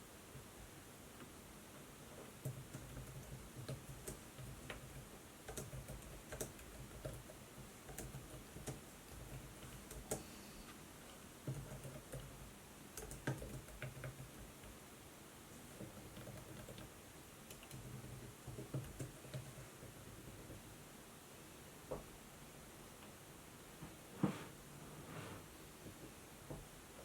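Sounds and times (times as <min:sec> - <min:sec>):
laptop keyboard typing: 0:02.1 - 0:10.3, 0:11.4 - 0:14.8, 0:15.7 - 0:20.6.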